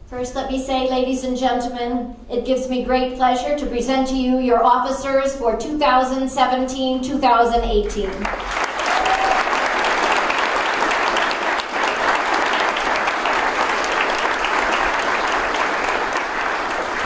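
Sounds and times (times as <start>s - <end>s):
audience applauding: 8.1s - 17.0s.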